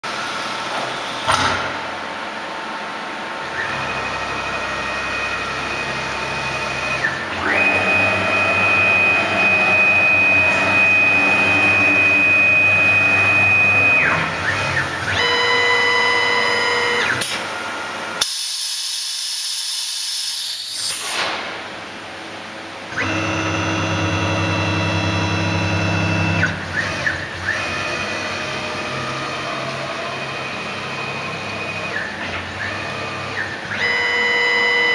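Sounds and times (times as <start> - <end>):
router spindle whine: 3.4 - 17.8, 22.9 - 34.9
axis motors whining: 3.6 - 17.4, 23.0 - 34.9.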